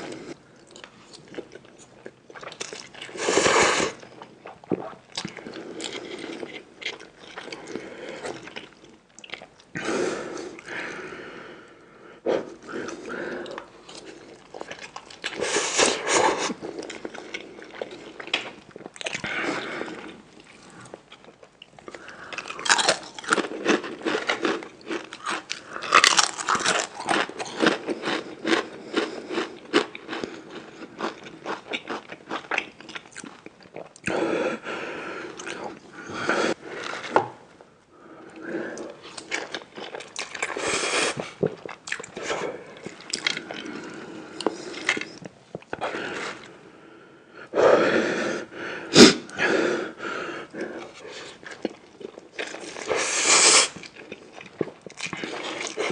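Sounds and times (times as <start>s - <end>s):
chewing crunchy food: 0.6s - 3.2s, 4.0s - 9.8s, 12.9s - 34.1s, 39.0s - 46.5s, 50.8s - 55.9s.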